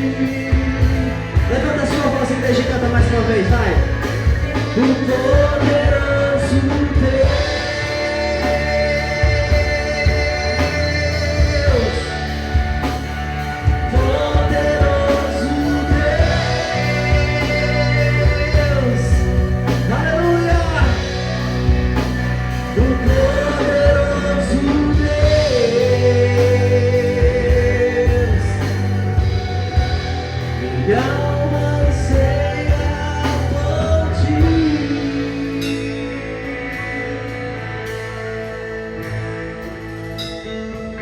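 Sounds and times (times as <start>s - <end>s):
steady drum beat: 0.0s - 35.9s
bass: 0.0s - 41.0s
person singing long notes: 4.6s - 36.5s.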